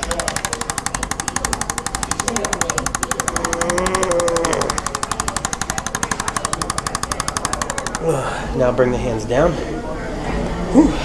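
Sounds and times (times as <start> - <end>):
rapid mechanical tapping: 0.0 - 8.3.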